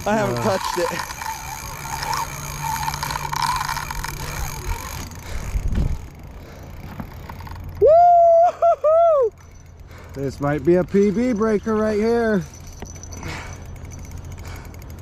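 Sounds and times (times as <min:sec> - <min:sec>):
fishing reel drag whirring: 0:00.0 - 0:15.0
man cheering woo: 0:07.8 - 0:09.4.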